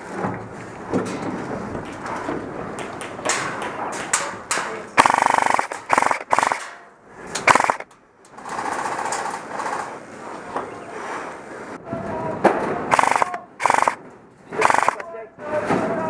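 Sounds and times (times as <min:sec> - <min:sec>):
airsoft guns firing full-auto: 0:05.0 - 0:06.8, 0:07.5 - 0:07.9, 0:12.9 - 0:14.0, 0:14.6 - 0:15.1.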